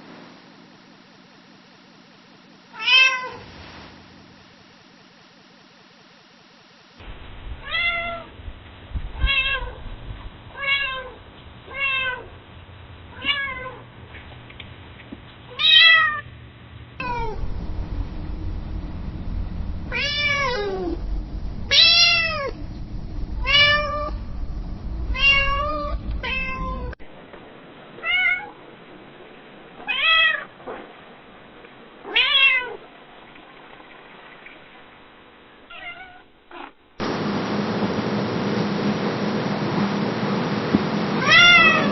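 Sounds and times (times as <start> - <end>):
cat meowing: 2.8 - 3.4, 10.6 - 12.3, 17.0 - 17.4, 19.9 - 21.0, 21.7 - 22.6, 25.1 - 27.0, 32.1 - 32.8, 35.7 - 36.8, 41.2 - 41.9
low background rumble: 7.0 - 41.9.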